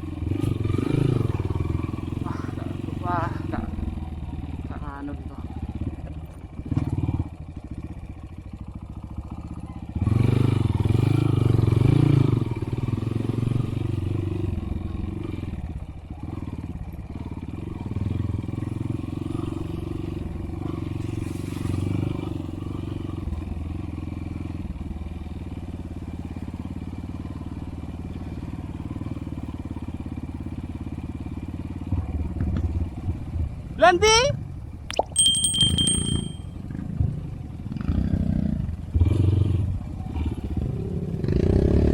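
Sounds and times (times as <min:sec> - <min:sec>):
motorcycle engine running: 0:00.0 - 0:21.2, 0:21.9 - 0:34.2.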